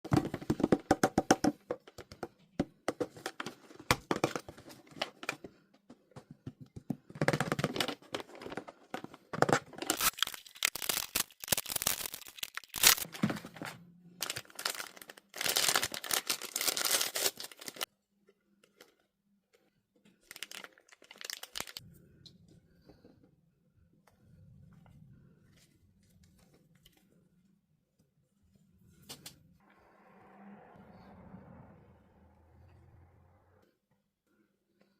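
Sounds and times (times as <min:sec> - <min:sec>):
packaging being torn and crinkled: 0:09.8 - 0:13.2, 0:14.2 - 0:17.9, 0:20.2 - 0:21.8.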